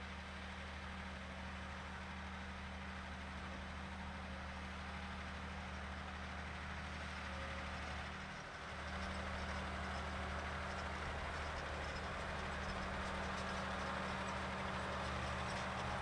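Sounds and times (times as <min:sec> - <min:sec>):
tractor diesel engine running: 0:05.8 - 0:16.0.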